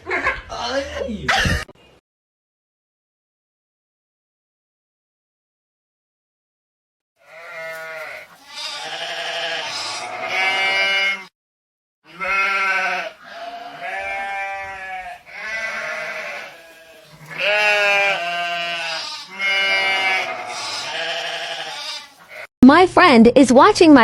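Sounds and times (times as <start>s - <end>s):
animal bleating: 7.2s - 11.3s, 12.0s - 22.5s.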